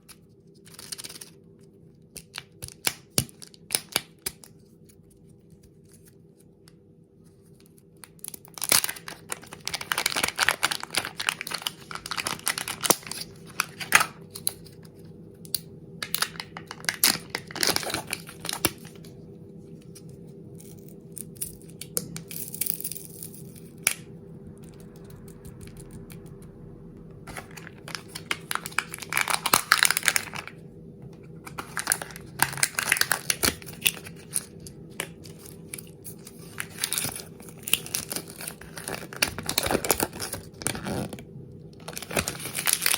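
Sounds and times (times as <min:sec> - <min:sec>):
wrappers crinkling and tearing: 0:08.1 - 0:14.8, 0:16.1 - 0:19.1, 0:27.3 - 0:30.6, 0:31.4 - 0:41.2, 0:41.8 - 0:42.9.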